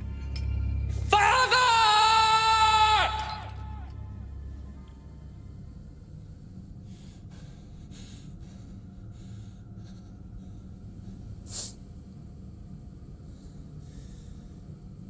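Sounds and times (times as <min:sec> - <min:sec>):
steady low rumble: 0:00.0 - 0:01.8, 0:02.8 - 0:15.0
man breathing hard: 0:06.3 - 0:12.2, 0:13.0 - 0:15.0.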